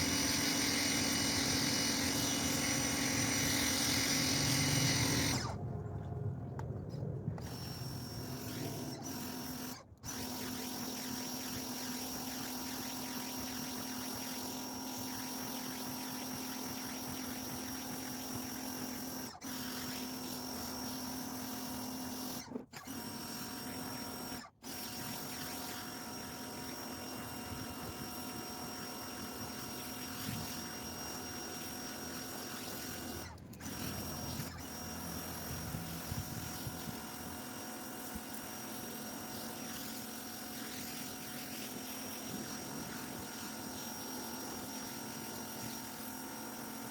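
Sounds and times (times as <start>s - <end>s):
pressure washer spraying water: 0.0s - 5.4s
pressure washer motor humming: 0.0s - 5.6s.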